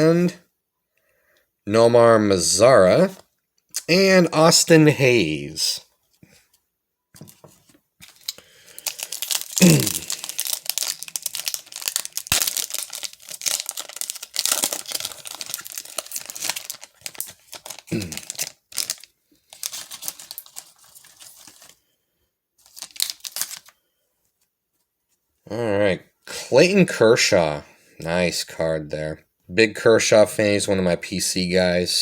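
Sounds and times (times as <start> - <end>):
foil wrapper crinkling and tearing: 8.0 - 21.8, 22.6 - 23.8.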